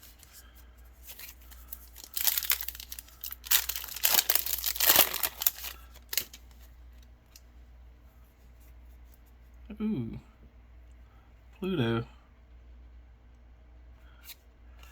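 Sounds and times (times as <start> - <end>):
foil wrapper tearing and crinkling: 1.1 - 6.6.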